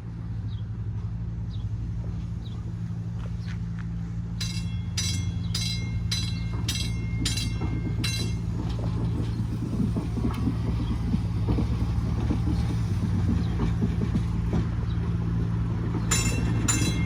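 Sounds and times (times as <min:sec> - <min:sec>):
rail car low hum: 0:00.0 - 0:17.0
rail car warning bell ringing: 0:04.4 - 0:12.3, 0:15.4 - 0:17.0.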